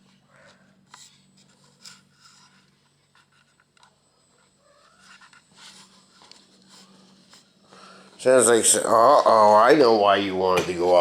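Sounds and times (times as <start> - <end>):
low steady hum: 0.0 - 11.0
scratching and rustling: 0.8 - 7.6.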